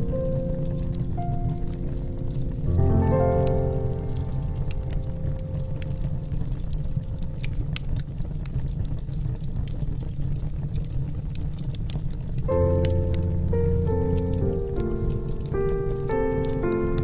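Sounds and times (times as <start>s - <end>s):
music: 0.0s - 8.0s, 12.4s - 17.0s
low steady rumble: 0.0s - 9.7s, 12.4s - 17.0s
wood fire crackling: 0.0s - 17.0s.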